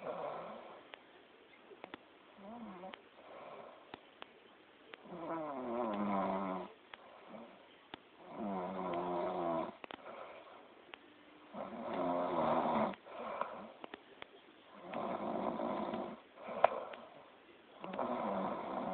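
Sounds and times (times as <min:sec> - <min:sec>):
faint clicks: 0:01.7 - 0:02.1, 0:05.9 - 0:06.1, 0:09.8 - 0:10.0, 0:12.8 - 0:15.1, 0:17.8 - 0:18.1
person snoring loudly: 0:05.1 - 0:06.7, 0:08.2 - 0:09.8, 0:11.6 - 0:13.0, 0:14.8 - 0:16.7, 0:17.9 - 0:18.9.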